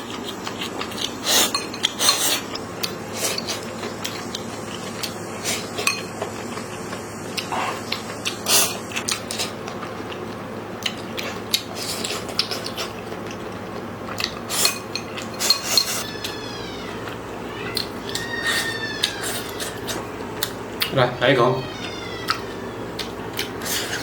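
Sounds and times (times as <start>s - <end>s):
utensils clinking against dish: 0.6s - 2.6s, 5.4s - 6.5s, 14.2s - 16.4s.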